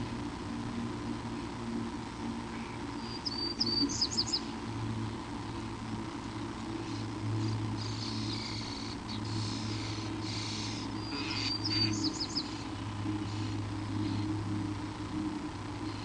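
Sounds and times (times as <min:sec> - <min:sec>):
low electrical hum: 0:00.0 - 0:16.0
small bird chirping: 0:02.5 - 0:04.6, 0:06.8 - 0:14.3.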